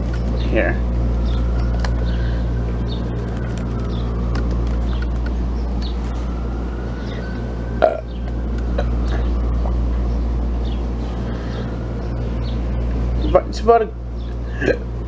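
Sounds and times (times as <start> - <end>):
low hum: 0.0 - 15.0
person burping: 7.8 - 8.1.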